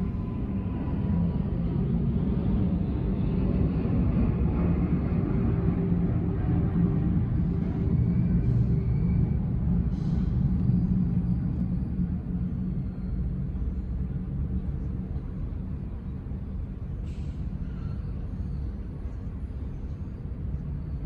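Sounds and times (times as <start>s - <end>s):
jet engines rumbling: 0.0s - 21.0s.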